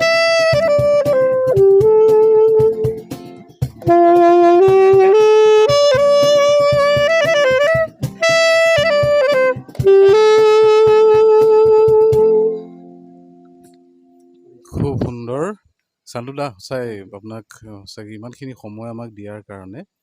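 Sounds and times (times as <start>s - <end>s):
saxophone playing slow melody: 0.0s - 14.6s
strummed guitar: 0.0s - 15.1s.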